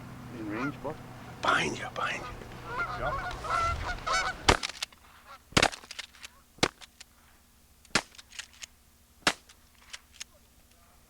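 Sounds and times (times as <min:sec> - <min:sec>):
shotgun shots: 0:02.4 - 0:04.9, 0:07.9 - 0:08.6.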